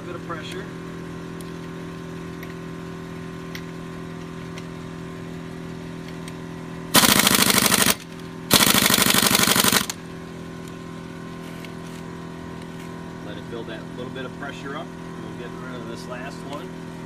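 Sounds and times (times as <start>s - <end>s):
air compressor humming: 0.0s - 17.0s
pneumatic impact wrench hammering: 6.9s - 10.1s.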